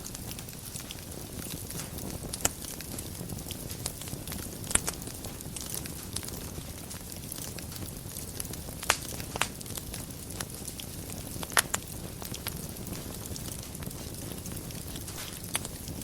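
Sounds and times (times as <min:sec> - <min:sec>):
sharp pops of burning wood: 0:00.0 - 0:16.0
wood fire crackling: 0:00.0 - 0:16.0.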